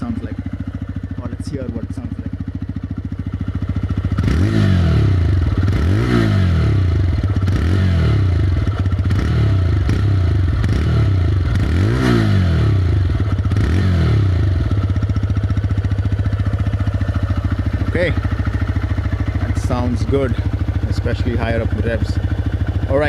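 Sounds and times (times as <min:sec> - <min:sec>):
motorcycle engine idling: 0:00.0 - 0:23.0
motorcycle engine revving: 0:00.0 - 0:23.0.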